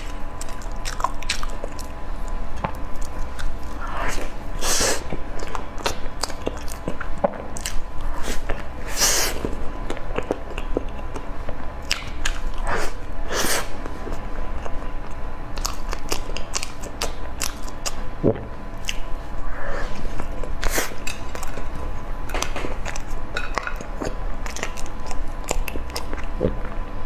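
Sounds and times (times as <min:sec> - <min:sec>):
person chewing and biting food: 0:00.0 - 0:26.8.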